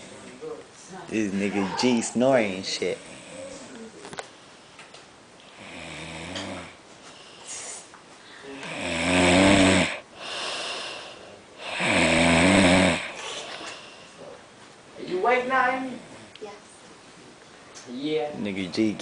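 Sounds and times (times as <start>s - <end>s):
man snoring: 5.5s - 6.8s, 8.6s - 14.0s.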